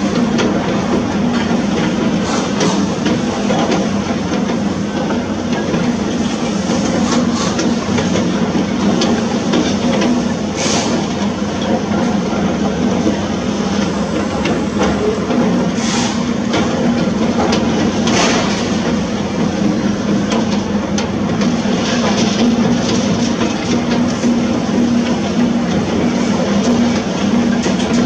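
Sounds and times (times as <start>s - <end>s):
diesel engine drone: 10.3s - 21.3s.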